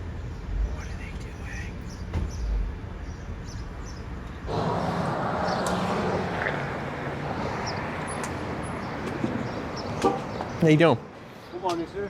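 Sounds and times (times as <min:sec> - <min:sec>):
low hum: 0:00.0 - 0:05.0
outdoor traffic noise: 0:00.0 - 0:12.0.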